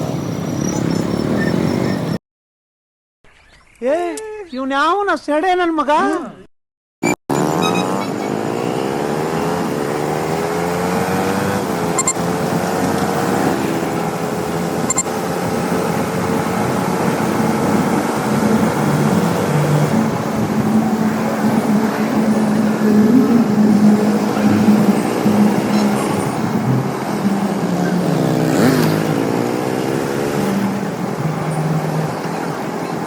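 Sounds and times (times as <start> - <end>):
road and wind noise: 0.0 - 2.2, 7.0 - 33.0
motorcycle engine: 7.0 - 33.0.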